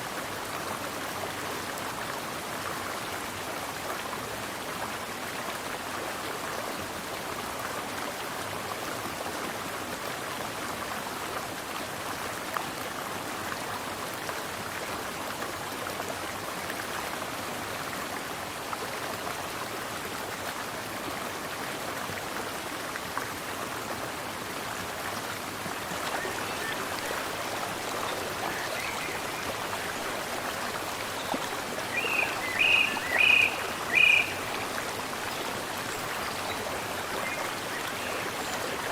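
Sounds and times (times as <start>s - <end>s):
stream flowing: 0.0s - 38.9s
bird chirping: 26.1s - 38.9s.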